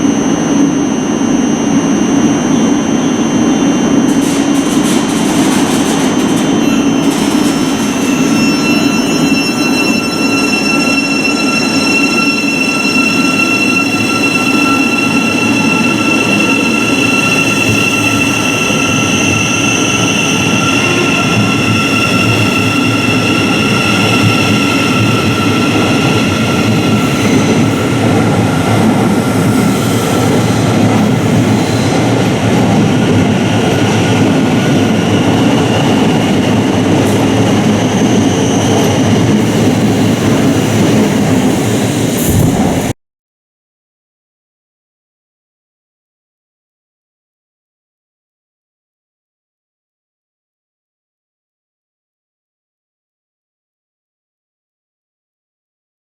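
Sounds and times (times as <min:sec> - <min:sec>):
electric train rumbling: 0:00.0 - 0:43.0.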